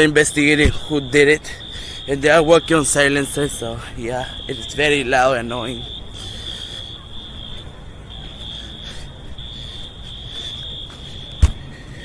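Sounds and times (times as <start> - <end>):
high-pitched fire alarm tone: 0.0 - 12.0.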